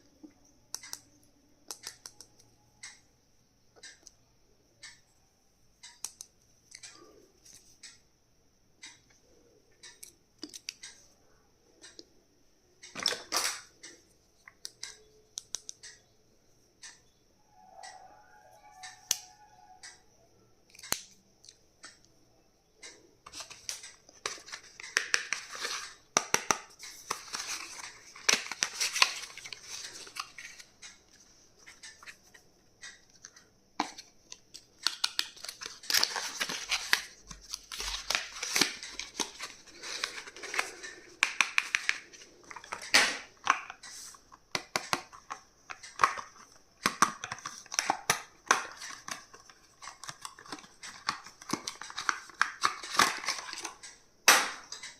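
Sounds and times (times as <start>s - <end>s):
sharp clicks and taps: 13.8s - 16.0s, 37.0s - 52.5s
packaging rustling and tearing: 34.8s - 40.9s.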